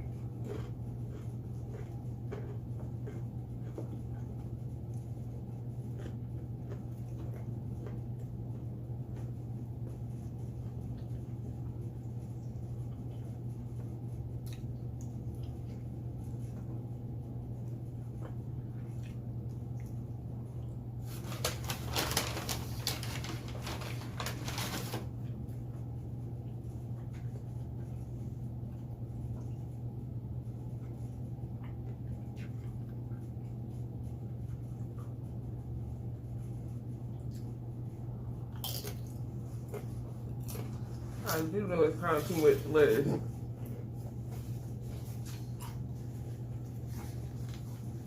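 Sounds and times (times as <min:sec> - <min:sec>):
steady low hum: 0:00.0 - 0:48.0
small eating clicks and taps: 0:14.4 - 0:15.8.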